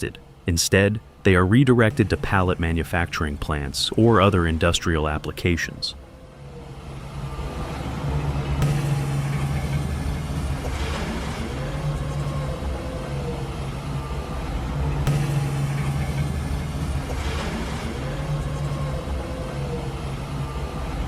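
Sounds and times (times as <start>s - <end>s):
faint rising whine: 0.0s - 21.0s
heavy machinery engine humming: 0.0s - 21.0s.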